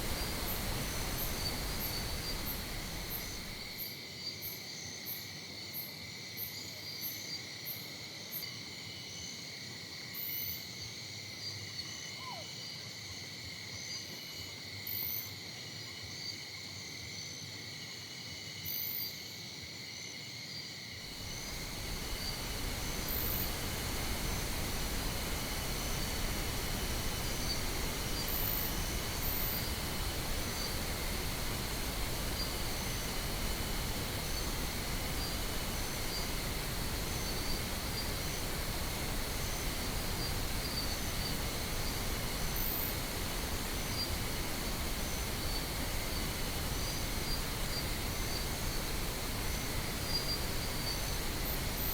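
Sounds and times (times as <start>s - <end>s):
steady hiss: 0.0s - 5.2s, 21.0s - 51.9s
insects chirping in trills: 0.0s - 51.9s.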